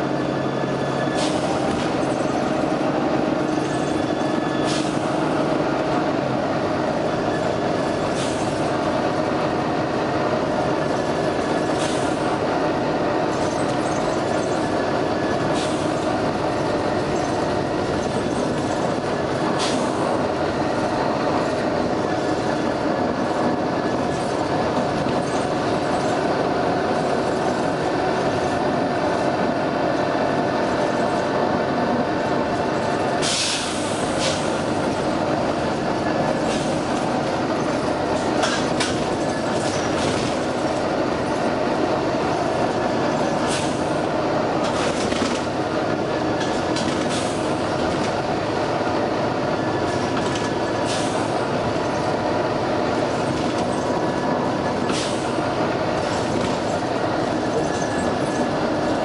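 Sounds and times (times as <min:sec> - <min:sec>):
bus diesel engine droning: 0:00.0 - 0:59.0
air brake hisses: 0:01.1 - 0:01.6, 0:04.6 - 0:05.1, 0:33.2 - 0:34.6, 0:43.5 - 0:43.9, 0:50.8 - 0:51.3, 0:54.9 - 0:55.3.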